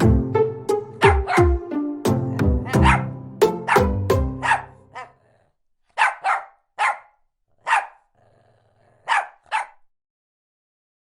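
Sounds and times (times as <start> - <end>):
dog barking: 1.0 - 1.5, 2.6 - 5.2, 5.9 - 8.1, 9.0 - 9.9.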